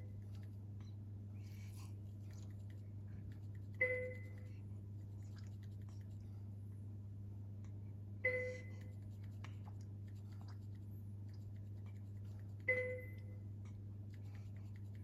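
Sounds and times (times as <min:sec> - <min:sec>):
low electrical hum: 0:00.0 - 0:15.0
short ringing tone: 0:12.7 - 0:13.4.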